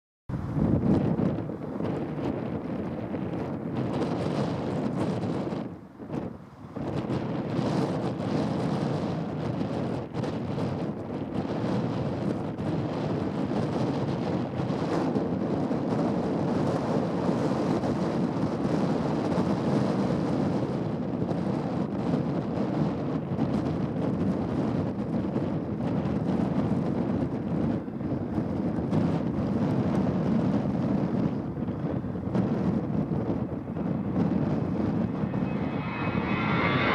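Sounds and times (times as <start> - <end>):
wind buffeting microphone: 0.3 - 36.9
jet engines droning: 31.3 - 36.9.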